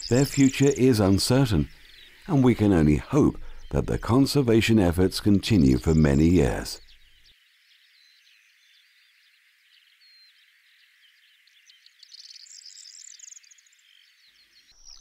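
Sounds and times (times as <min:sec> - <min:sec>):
small animals chirping and trilling: 0:00.0 - 0:06.8.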